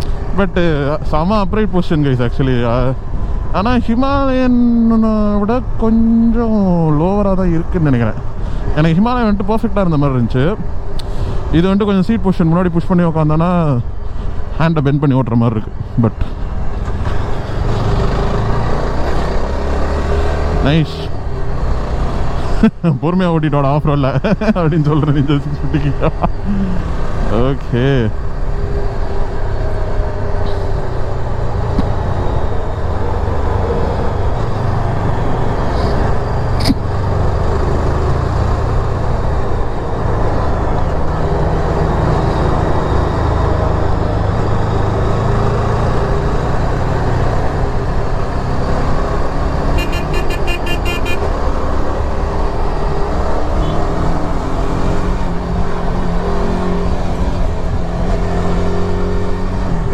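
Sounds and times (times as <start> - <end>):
wind and road noise: 0.0 - 59.9.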